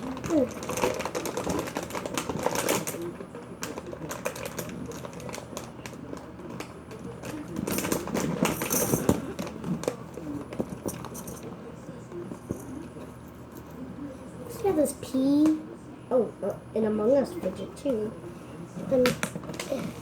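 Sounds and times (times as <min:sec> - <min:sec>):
plastic toys clicking and clattering: 0:00.0 - 0:11.5, 0:18.8 - 0:20.0.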